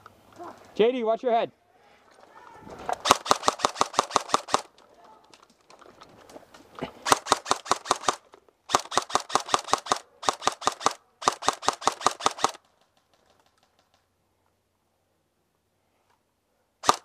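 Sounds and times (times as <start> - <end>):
airsoft gun firing: 3.0 - 4.7, 7.0 - 12.6.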